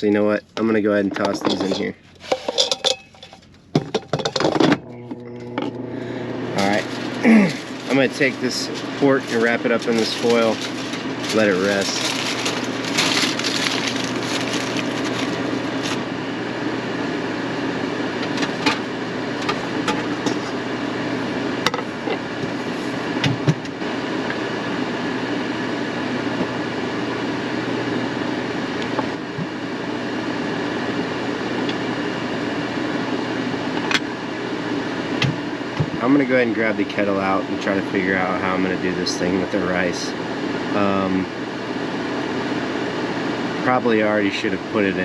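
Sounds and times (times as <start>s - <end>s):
air fryer fan humming: 0.0s - 45.0s
aluminium foil crinkling: 6.6s - 16.0s.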